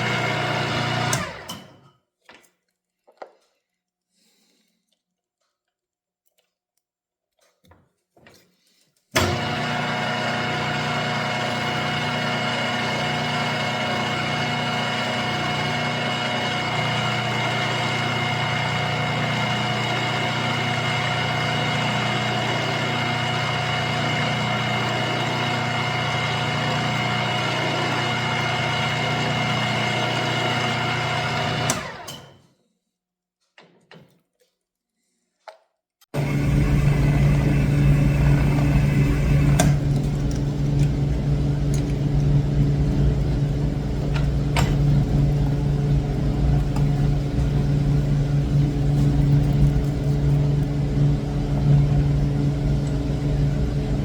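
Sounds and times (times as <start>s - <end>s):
milling machine motor humming: 0.0s - 1.5s, 9.2s - 32.1s, 36.2s - 54.0s.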